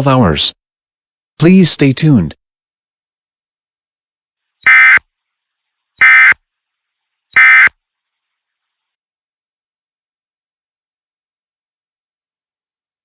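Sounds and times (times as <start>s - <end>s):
buzzy digital tone bursts: 4.7s - 5.0s.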